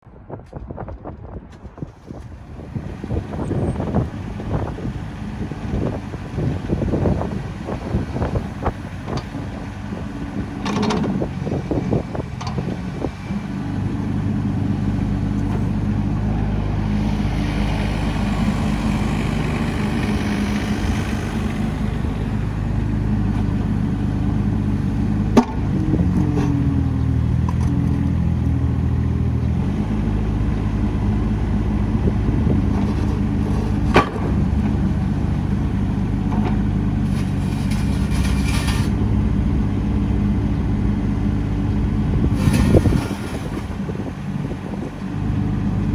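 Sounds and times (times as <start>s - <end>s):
diesel engine running: 1.9s - 45.9s
scattered knocks: 25.4s - 25.9s.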